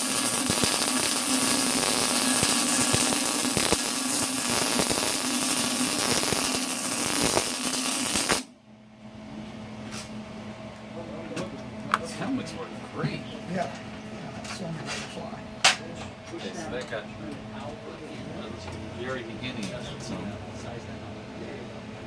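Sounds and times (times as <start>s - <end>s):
welding arc crackling: 0.0s - 8.5s.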